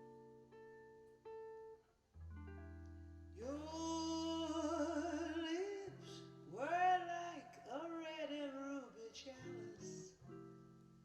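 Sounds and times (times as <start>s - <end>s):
pop ballad through small speaker: 2.4s - 11.0s.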